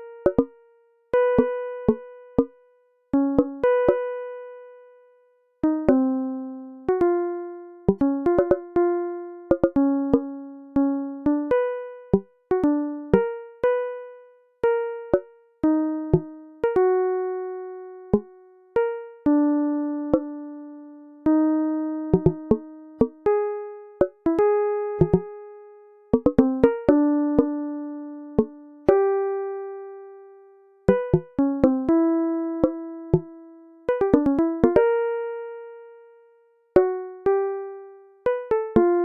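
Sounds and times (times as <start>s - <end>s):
slow sparse keyboard melody: 0.0s - 39.0s
light clicking accents: 25.0s - 25.3s.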